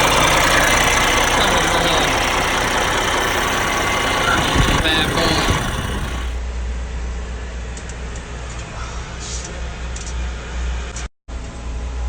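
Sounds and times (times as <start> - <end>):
diesel truck engine idling: 0.0 - 6.4.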